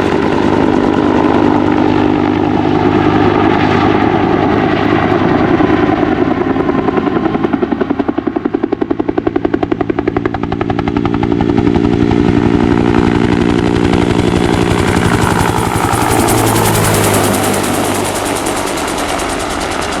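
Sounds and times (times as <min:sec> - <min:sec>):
turbine engine whine: 0:00.0 - 0:07.4, 0:08.4 - 0:20.0
helicopter rotor beating: 0:00.0 - 0:20.0.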